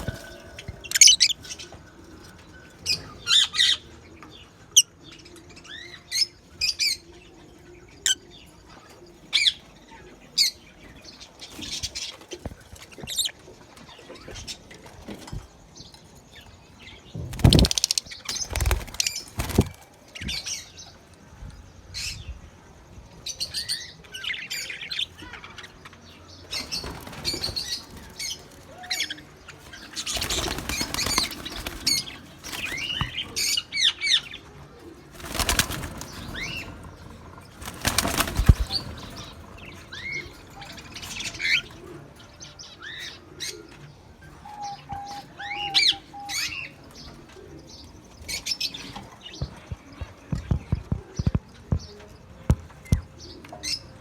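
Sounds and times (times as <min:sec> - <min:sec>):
wing flapping: 0:00.0 - 0:01.0, 0:17.2 - 0:19.9, 0:29.6 - 0:33.5, 0:35.1 - 0:41.6.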